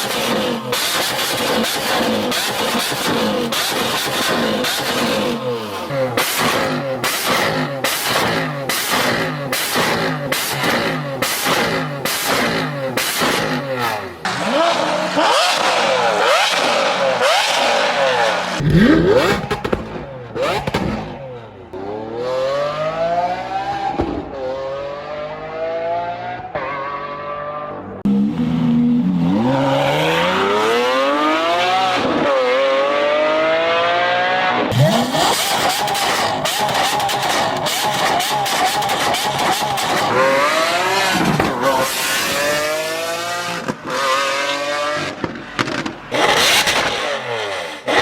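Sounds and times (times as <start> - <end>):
sports car engine revving: 0.0 - 48.0.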